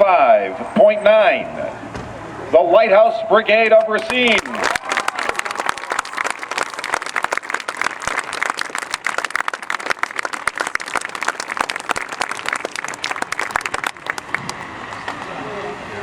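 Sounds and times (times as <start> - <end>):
crowd applauding: 4.0 - 15.4.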